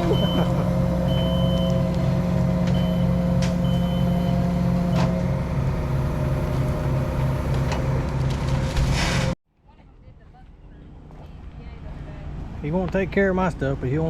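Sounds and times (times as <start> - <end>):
engine pulsing low hum: 0.0 - 14.0.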